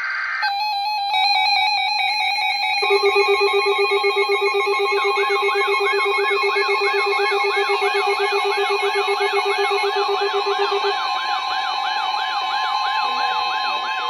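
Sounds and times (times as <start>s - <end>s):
warbling siren-like alarm: 0.4s - 14.0s
rapid low beeping: 2.8s - 14.0s
steady alert tones: 2.8s - 14.0s.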